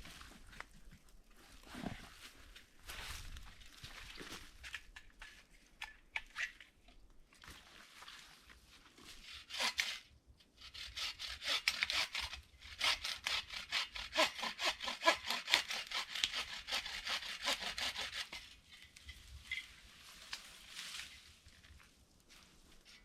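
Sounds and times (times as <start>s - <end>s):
hand saw cutting wood: 9.2s - 18.6s.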